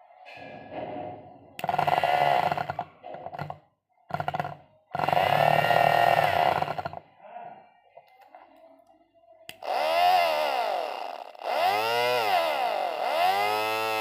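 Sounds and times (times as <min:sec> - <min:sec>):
vacuum cleaner motor whine: 0:09.5 - 0:14.0.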